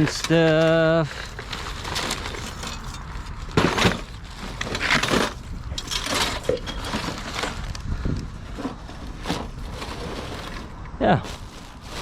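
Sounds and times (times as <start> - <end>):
junk knocking and clattering: 0.0 - 7.6.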